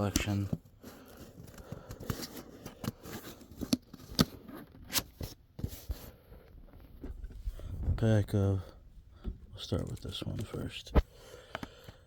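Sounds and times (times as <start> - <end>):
light clicks taps and scrapes: 9.2 - 12.0.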